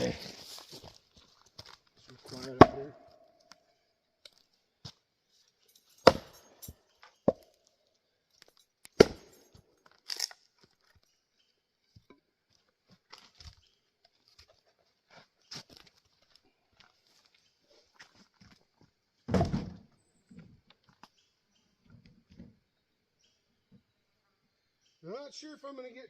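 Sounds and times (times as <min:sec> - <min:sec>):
axe chopping wood: 0:02.5 - 0:03.1, 0:06.0 - 0:06.5, 0:08.9 - 0:09.4
split wood crackling: 0:05.9 - 0:11.2.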